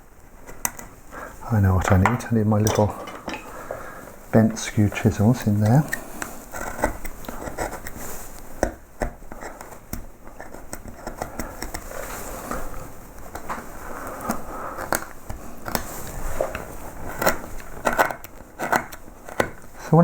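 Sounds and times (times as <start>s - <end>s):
chisel paring wood: 5.4s - 11.9s, 16.5s - 19.7s.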